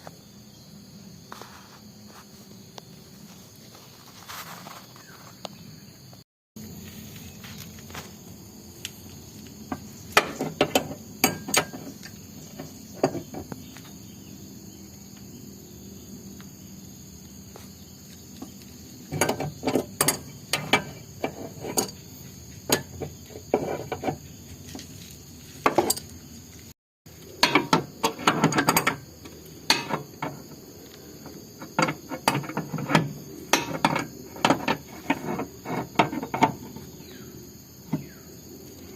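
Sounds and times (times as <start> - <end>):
insects chirping: 0.0 - 38.9
metal tools clinking on car body: 10.2 - 13.4, 19.1 - 22.0, 25.7 - 26.1, 27.4 - 29.0, 29.7 - 30.6, 31.6 - 36.8.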